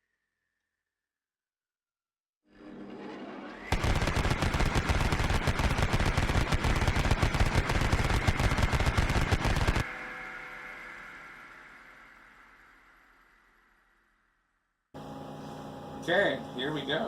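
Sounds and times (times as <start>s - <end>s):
rapid sharp hits: 3.7s - 9.9s.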